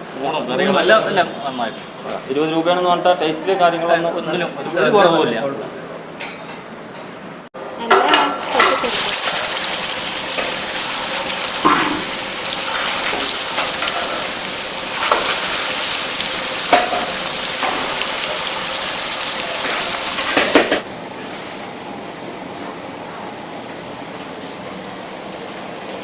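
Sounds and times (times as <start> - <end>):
food sizzling in hot oil: 8.1 - 20.8.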